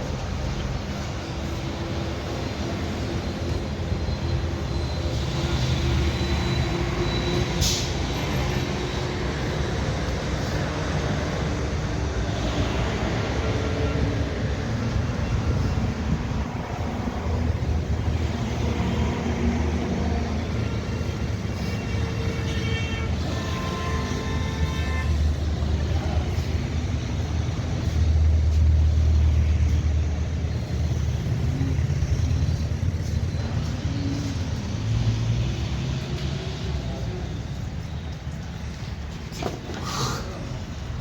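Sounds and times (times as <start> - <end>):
traffic engines rumbling: 0.0 - 41.0
vehicle horn: 20.6 - 25.5.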